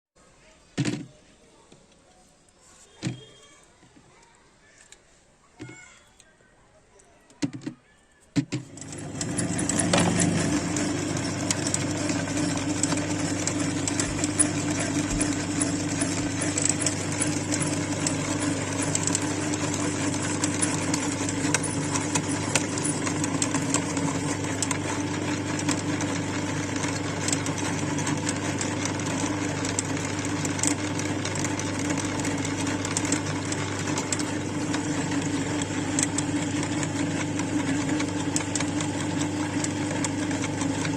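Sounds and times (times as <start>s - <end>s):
electric meat grinder motor humming: 8.6s - 40.9s.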